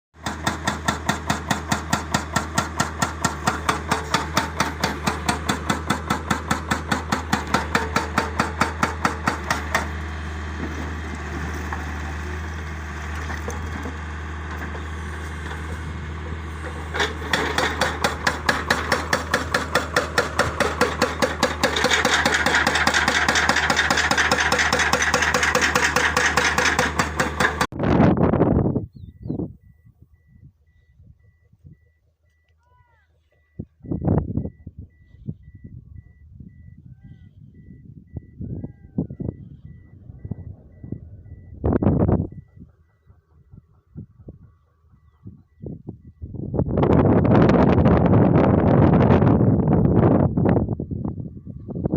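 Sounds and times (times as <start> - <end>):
rapid hammering knocks: 0.2 - 10.0, 17.2 - 27.7
heavy diesel machinery droning: 0.2 - 27.7, 29.1 - 51.9.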